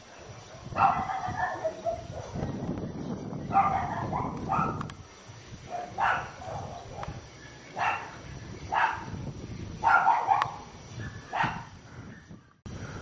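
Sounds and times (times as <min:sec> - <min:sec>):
dog barking: 0:00.5 - 0:02.4, 0:03.5 - 0:04.8, 0:05.7 - 0:07.2, 0:07.8 - 0:08.1, 0:08.7 - 0:09.1, 0:09.8 - 0:11.7.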